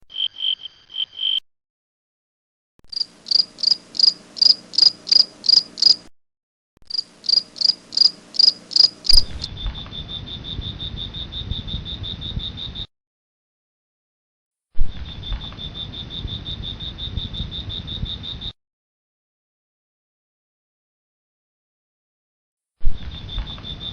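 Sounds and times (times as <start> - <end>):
crickets chirping: 0.1 - 1.4, 2.9 - 6.0, 6.9 - 12.9, 15.0 - 18.5.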